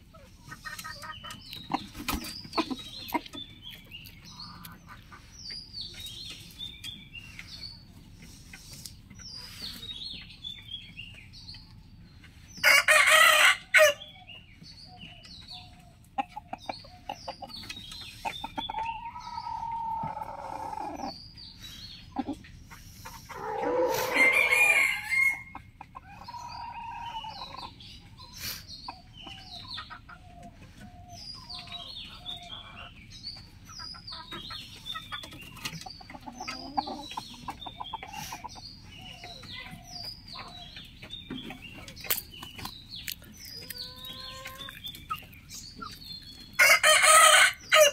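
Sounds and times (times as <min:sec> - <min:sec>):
chickens clucking: 0:00.0 - 0:47.9
roosters crowing: 0:12.6 - 0:14.1, 0:23.3 - 0:27.7, 0:46.6 - 0:47.9.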